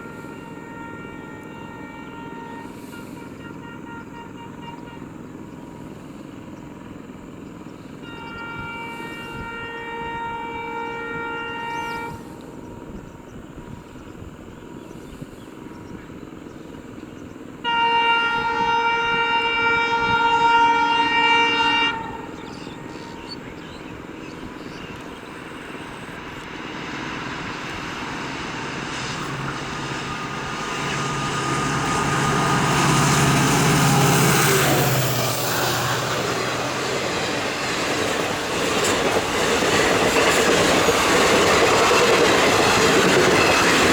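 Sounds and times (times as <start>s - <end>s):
locomotive air horn blasts: 0.0s - 6.6s, 7.2s - 13.7s, 17.6s - 43.9s
train rumble: 0.0s - 43.9s
low engine drone: 20.6s - 38.6s.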